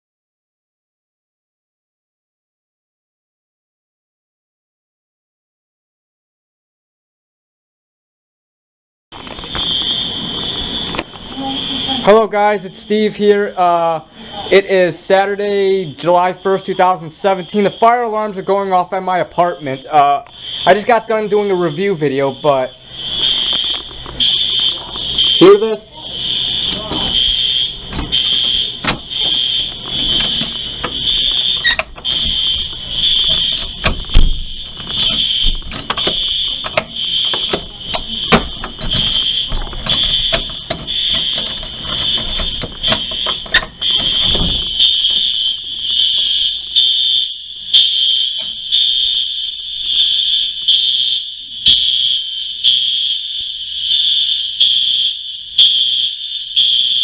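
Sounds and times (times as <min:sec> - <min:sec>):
fire alarm pulsing tone: 0:09.1 - 0:57.0
knocks and clicks: 0:27.9 - 0:45.4.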